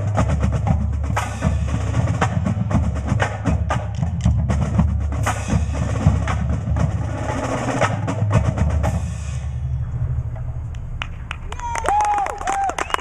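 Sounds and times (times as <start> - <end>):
fast drums and percussion: 0.0 - 9.7
low drum: 0.0 - 11.8.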